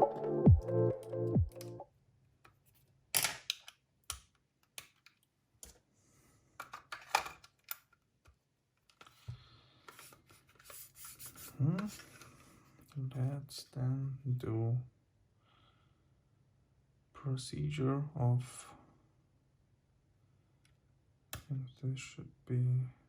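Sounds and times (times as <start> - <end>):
plastic parts clicking: 2.4 - 5.8, 6.6 - 9.2.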